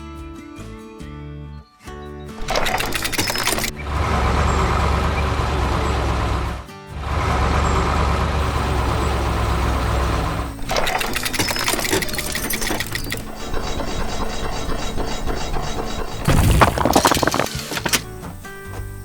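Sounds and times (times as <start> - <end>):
mechanical clattering and rattling: 2.4 - 8.5, 10.6 - 18.4
diesel engine running: 2.4 - 18.4.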